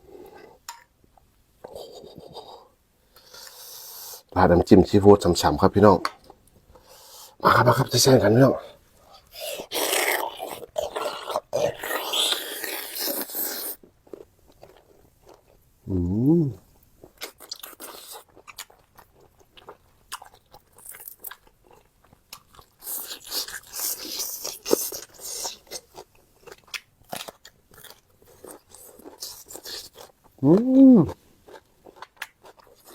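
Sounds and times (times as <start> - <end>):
chewing and crunching food: 9.0 - 15.6, 17.0 - 32.9
person humming: 15.9 - 16.6, 30.4 - 31.2.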